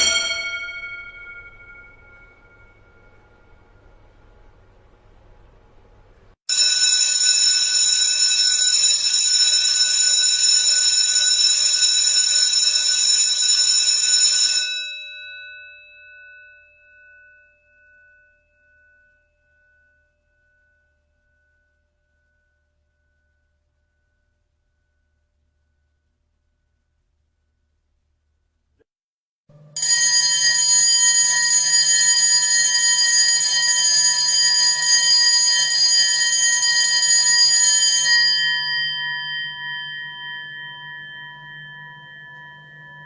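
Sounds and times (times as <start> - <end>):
electric bell ringing: 0.0 - 3.8, 6.5 - 15.9, 29.5 - 43.0.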